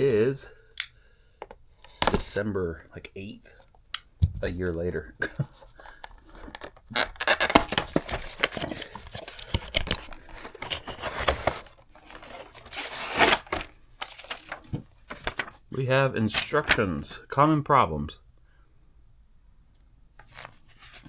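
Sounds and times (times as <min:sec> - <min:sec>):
wrapping paper tearing and crumpling: 0:06.4 - 0:15.6.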